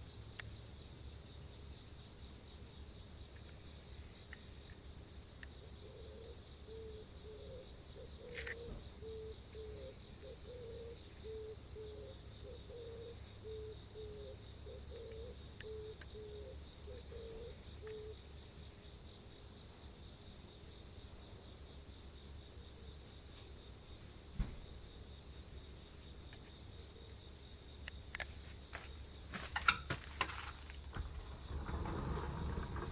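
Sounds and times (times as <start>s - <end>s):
insect chirring: 0.0s - 32.9s
dove cooing: 5.8s - 18.2s.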